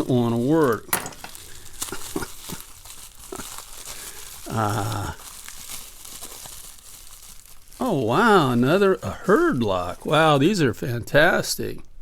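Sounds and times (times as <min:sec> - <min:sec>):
packing material rustling: 0:00.0 - 0:10.6
person humming: 0:04.4 - 0:05.3.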